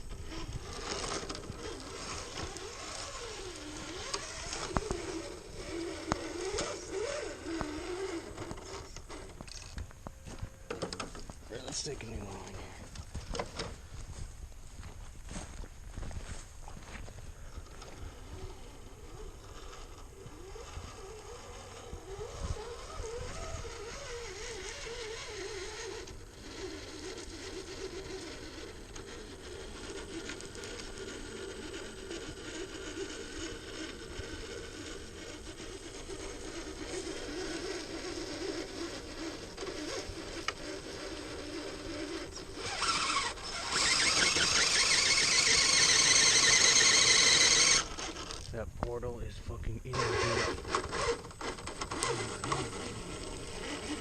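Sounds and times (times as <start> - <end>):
electric drivetrain whirring: 0.0 - 48.9, 49.9 - 54.0
mechanical clicking and ratcheting: 42.6 - 48.5.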